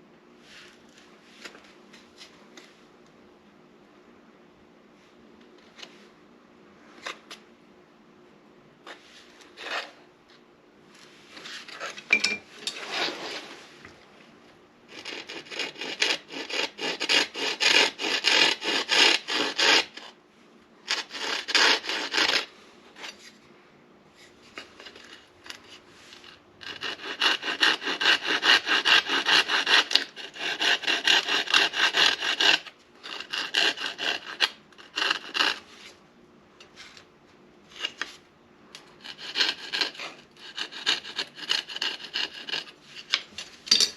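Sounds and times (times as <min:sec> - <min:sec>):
hand drill rasping on wood: 0:14.9 - 0:20.1, 0:20.9 - 0:22.5, 0:26.6 - 0:35.6, 0:39.0 - 0:42.7.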